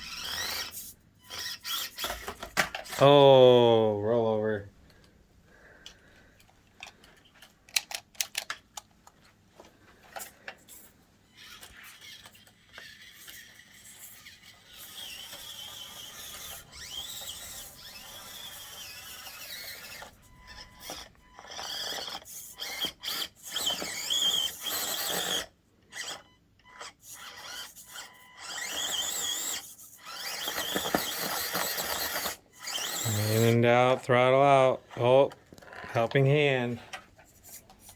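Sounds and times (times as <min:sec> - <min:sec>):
electric motor whining: 0:00.0 - 0:03.7, 0:11.4 - 0:36.2.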